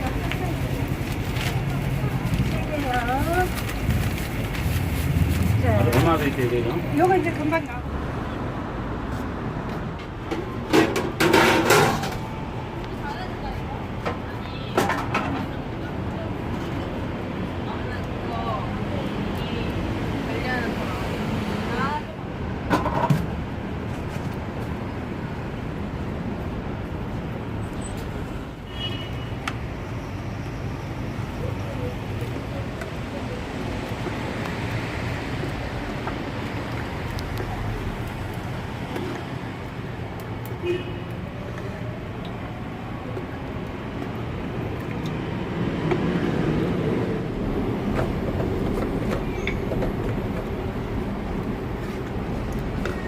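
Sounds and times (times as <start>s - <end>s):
street traffic rumble: 0.0s - 53.0s
passing train rumble: 45.2s - 52.4s.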